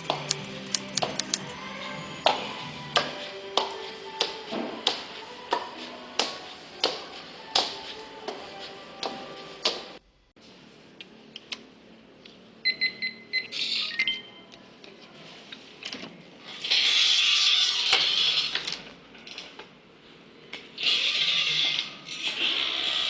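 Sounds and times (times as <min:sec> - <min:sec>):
short electronic beeps: 0:12.6 - 0:14.4.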